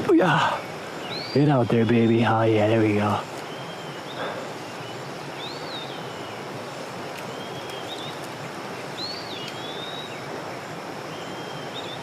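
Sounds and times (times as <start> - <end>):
creek flowing: 0.0 - 12.0
songbird whistling: 7.3 - 8.2, 9.0 - 10.2.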